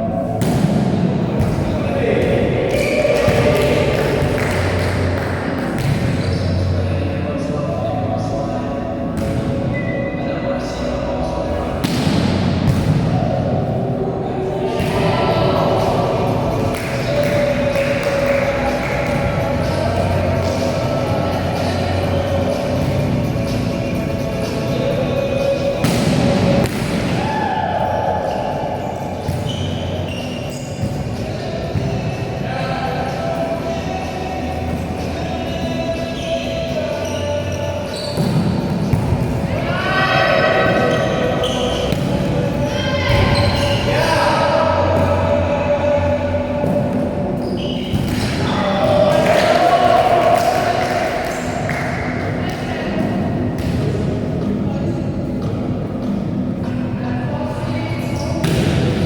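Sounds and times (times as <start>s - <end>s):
volleyball strike: 25.8s - 27.2s
players' voices calling: 39.4s - 53.5s.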